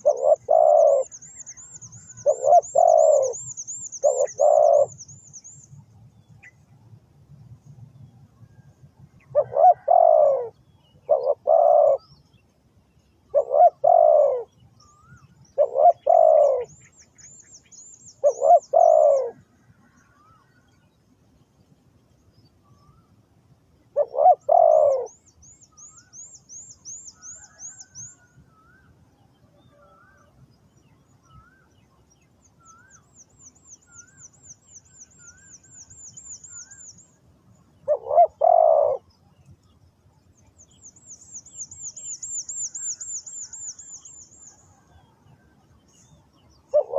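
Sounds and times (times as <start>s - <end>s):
dove cooing: 0.0s - 1.2s, 2.2s - 5.0s, 9.3s - 12.1s, 13.3s - 14.5s, 15.6s - 16.8s, 18.2s - 19.4s, 24.0s - 25.2s, 37.8s - 39.1s, 46.7s - 46.9s.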